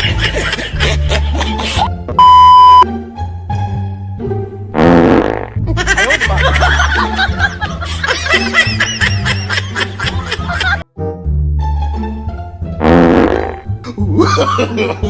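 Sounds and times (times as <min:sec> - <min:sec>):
laughter: 0:00.0 - 0:01.9, 0:05.8 - 0:10.8, 0:14.1 - 0:15.0
background music with bass line: 0:00.0 - 0:15.0
fart sound effect: 0:04.8 - 0:05.6, 0:12.8 - 0:13.7.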